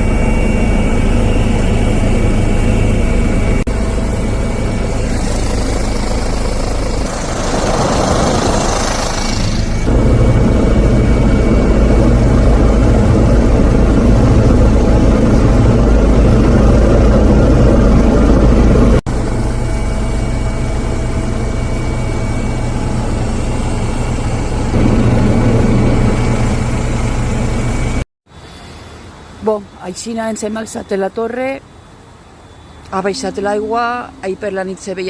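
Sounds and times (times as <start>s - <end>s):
helicopter engine and rotor: 0.0s - 28.0s.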